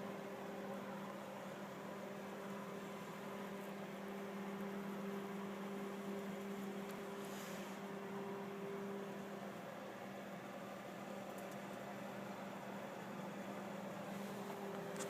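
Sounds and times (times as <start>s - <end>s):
distant mechanical hum: 0.0s - 15.0s
faint hiss: 6.3s - 8.0s.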